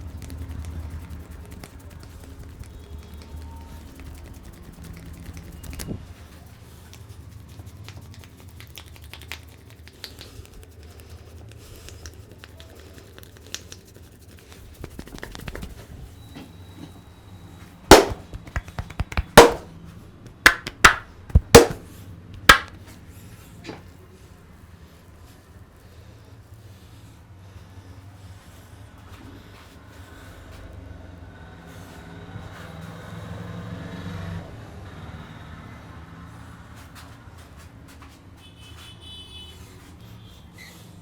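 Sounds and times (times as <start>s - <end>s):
loud sharp knocks: 17.9s - 19.7s, 20.5s - 21.9s.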